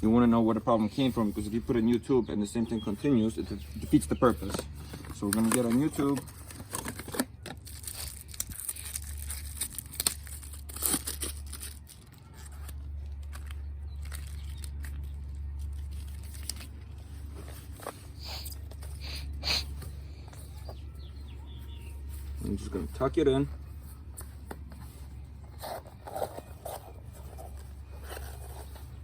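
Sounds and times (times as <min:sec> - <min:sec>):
packaging tearing and crinkling: 0:04.4 - 0:18.5
steady low hum: 0:11.8 - 0:29.0.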